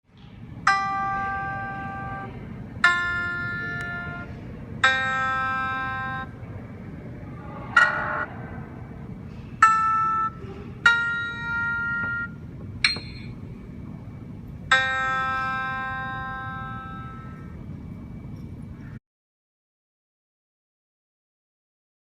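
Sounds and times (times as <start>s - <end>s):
low hum: 0.1s - 19.0s
electronic chime notes: 0.7s - 6.4s, 7.7s - 8.5s, 9.6s - 13.7s, 14.6s - 18.6s.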